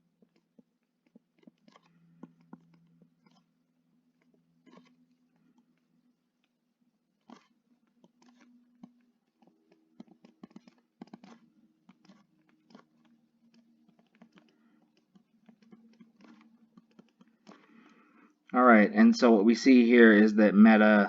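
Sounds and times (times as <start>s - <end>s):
pen writing scratches: 0.2s - 5.8s, 7.2s - 17.8s.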